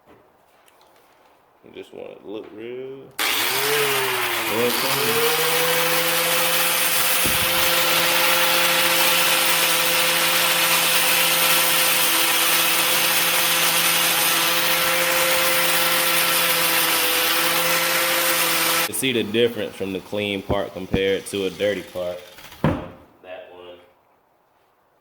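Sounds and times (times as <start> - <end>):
wire brush tool scrubbing metal: 3.2 - 18.9.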